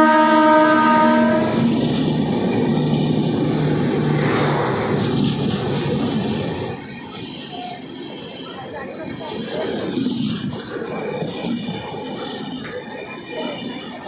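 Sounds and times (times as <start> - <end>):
locomotive horn chord: 0.0 - 1.6
train rumbling past: 0.0 - 14.0.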